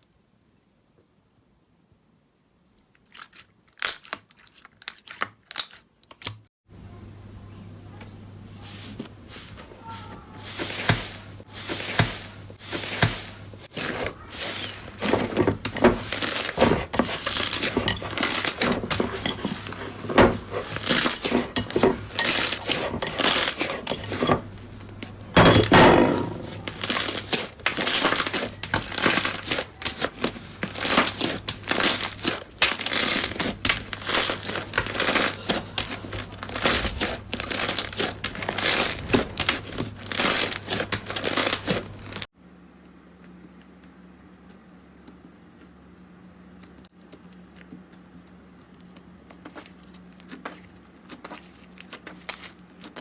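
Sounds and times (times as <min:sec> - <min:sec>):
slime crackling and popping: 0:26.6 - 0:42.2.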